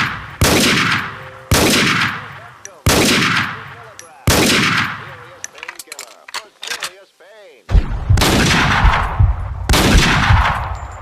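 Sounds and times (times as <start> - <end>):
rifle shots echoing: 0.0 - 5.4, 7.7 - 11.0.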